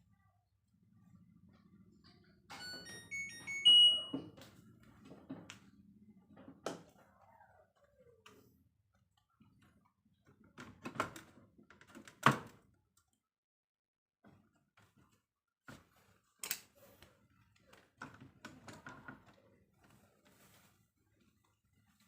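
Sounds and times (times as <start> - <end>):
washing machine control beeps: 2.5 - 4.4.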